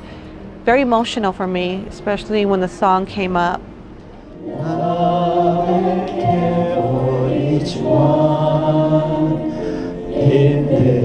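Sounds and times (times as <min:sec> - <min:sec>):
group of voices singing: 0:04.4 - 0:11.0.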